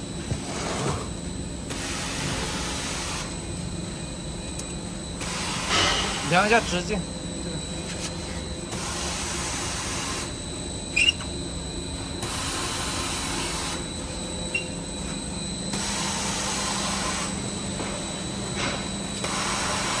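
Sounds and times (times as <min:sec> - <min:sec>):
sharp squeak: 0:10.9 - 0:11.4, 0:14.5 - 0:14.9.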